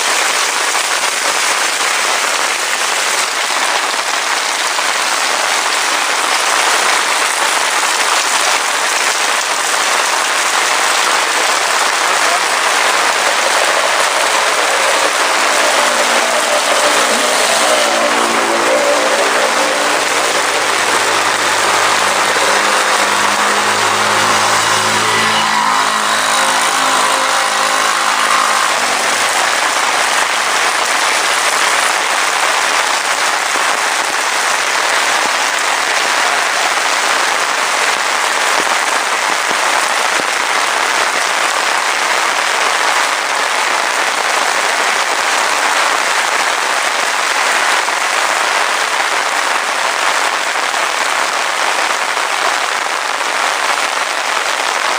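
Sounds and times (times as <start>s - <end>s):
heavy rain falling: 0.0s - 54.9s
vehicle engine running: 6.1s - 40.4s.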